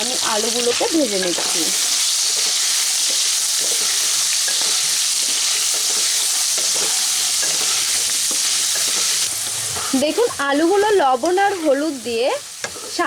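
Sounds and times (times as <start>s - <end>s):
potatoes sizzling in hot oil: 0.0s - 13.0s
stirring scrape: 2.2s - 11.8s, 12.6s - 13.0s.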